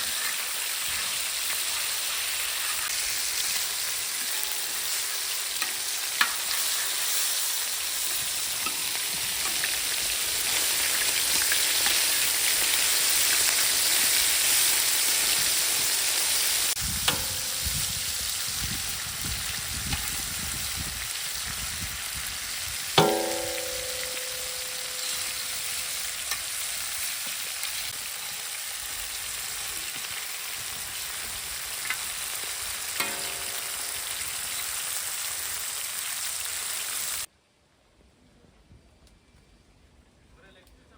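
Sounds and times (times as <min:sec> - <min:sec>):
chicken sizzling in oil: 0:00.0 - 0:37.3
metal clinks against pan: 0:23.0 - 0:25.8, 0:33.0 - 0:34.0.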